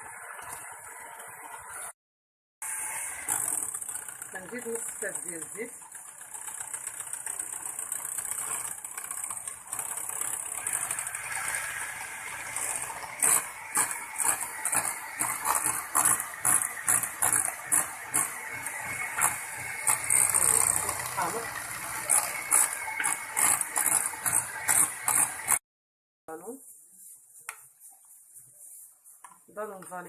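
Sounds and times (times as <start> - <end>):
batter rushing in mixing bowl: 2.6 - 25.6
sharp mixing strokes: 2.6 - 25.6.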